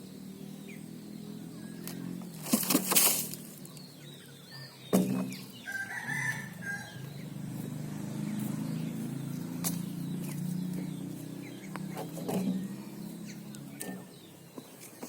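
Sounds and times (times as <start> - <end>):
low engine hum: 0.0 - 15.0
rooster crowing: 5.6 - 7.1.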